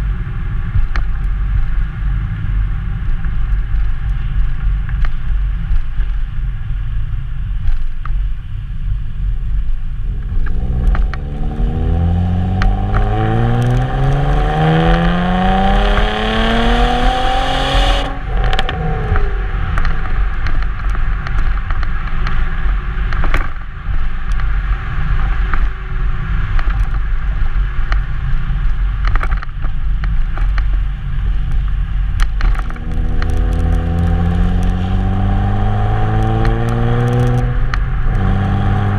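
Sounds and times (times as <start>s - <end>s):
heavy low rumble: 0.0s - 38.9s
car engine exhaust accelerating: 8.6s - 38.9s.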